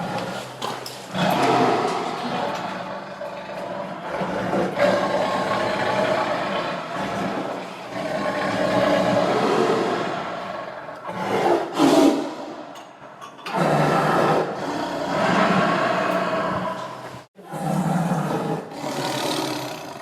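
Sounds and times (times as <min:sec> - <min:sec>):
tiger growling and roaring: 0:00.0 - 0:12.7, 0:13.4 - 0:20.0.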